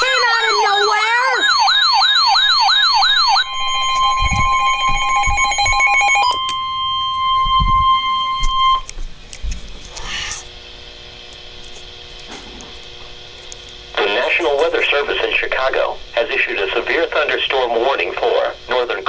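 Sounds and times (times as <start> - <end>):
long steady alert tone: 0.0 - 8.9
pulsing electronic tones: 0.0 - 8.9
rising and falling siren tone: 0.0 - 8.9.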